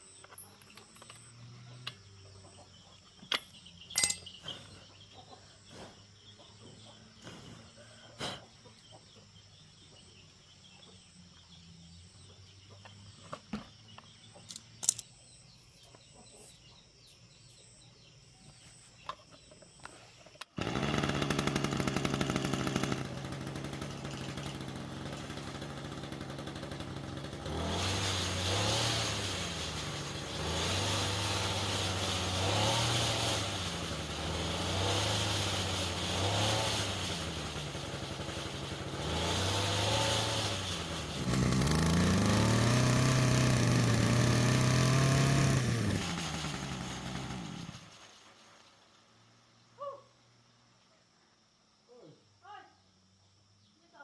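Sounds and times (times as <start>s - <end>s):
small petrol engine running: 20.6s - 49.0s.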